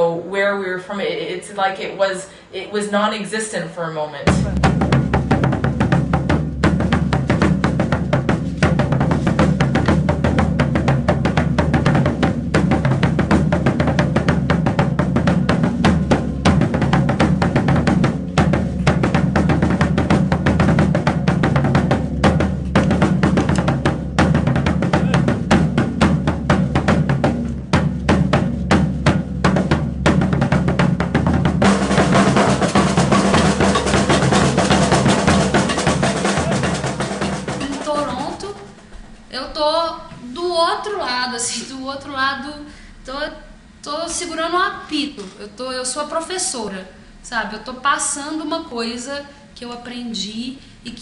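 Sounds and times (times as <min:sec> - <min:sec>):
drum ensemble playing: 0:04.2 - 0:39.4
deep bass drums: 0:04.3 - 0:39.2
snare drums: 0:04.3 - 0:39.2
steady high noise: 0:31.1 - 0:39.3.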